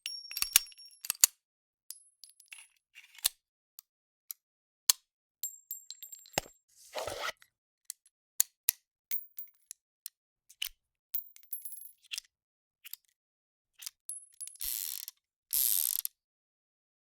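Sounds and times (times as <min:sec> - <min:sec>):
sliding scrape: 0:06.4 - 0:07.3.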